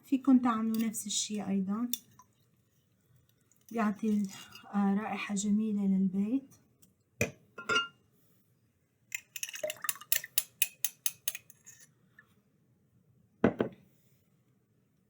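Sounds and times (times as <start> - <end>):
kitchen utensils and dishes clinking: 7.6 - 8.0.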